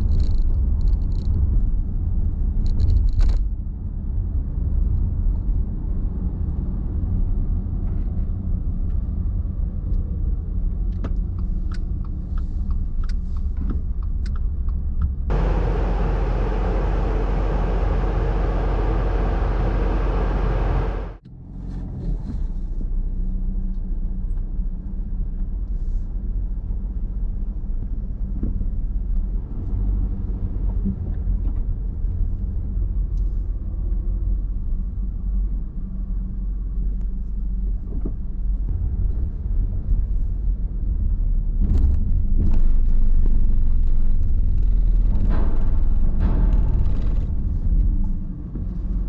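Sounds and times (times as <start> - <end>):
low engine rumble: 0.0 - 49.0.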